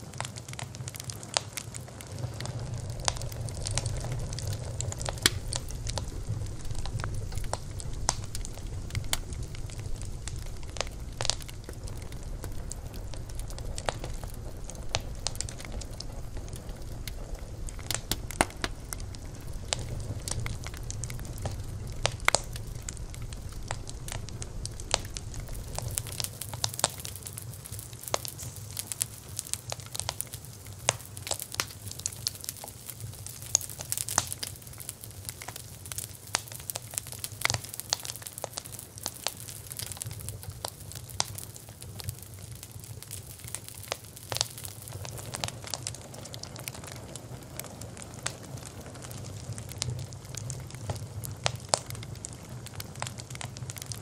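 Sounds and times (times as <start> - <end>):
wood fire crackling and popping: 0.0 - 54.0
low steady rumble: 1.2 - 32.1.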